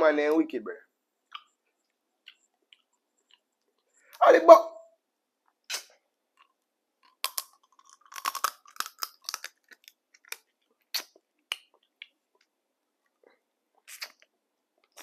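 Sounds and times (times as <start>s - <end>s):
crab shell crunching: 6.4s - 12.4s
chewing: 6.4s - 15.0s.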